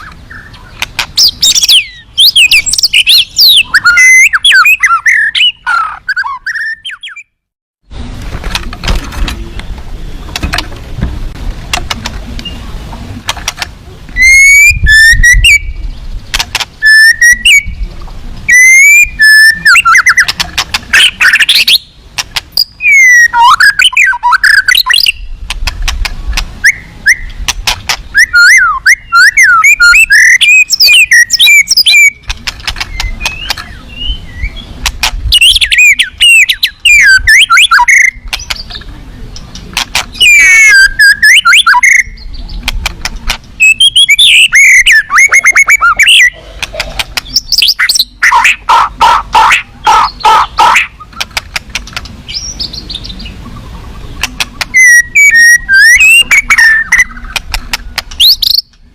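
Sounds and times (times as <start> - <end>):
bird singing loudly: 0.0 - 7.4, 14.2 - 15.9, 16.8 - 17.9, 18.5 - 25.4, 26.6 - 27.4, 28.1 - 32.2, 32.9 - 34.7, 35.3 - 38.8, 40.1 - 42.6, 43.6 - 46.4, 54.6 - 57.4.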